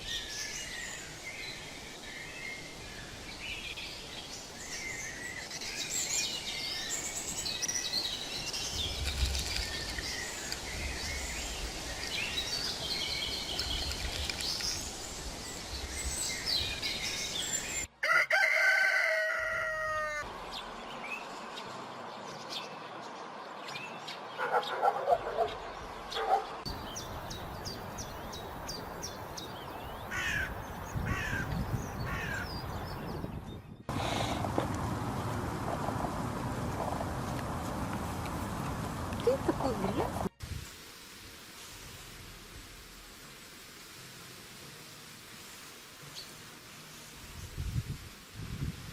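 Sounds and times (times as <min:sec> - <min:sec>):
small birds chirping: 0:00.0 - 0:17.9, 0:20.4 - 0:35.6, 0:38.4 - 0:40.4
rooster crowing: 0:18.0 - 0:20.3.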